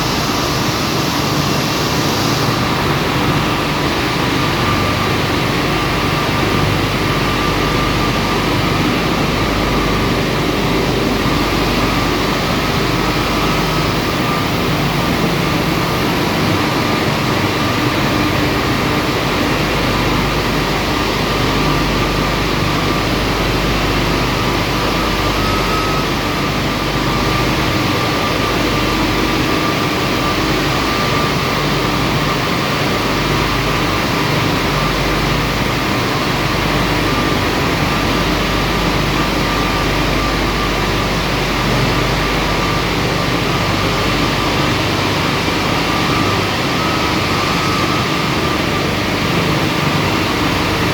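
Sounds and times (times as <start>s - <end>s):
faint steady whine: 0.0s - 50.9s
low motor hum: 0.0s - 50.9s.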